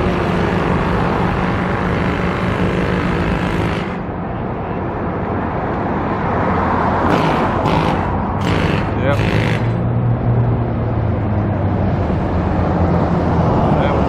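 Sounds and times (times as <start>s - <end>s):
engine droning hum: 0.0s - 14.0s.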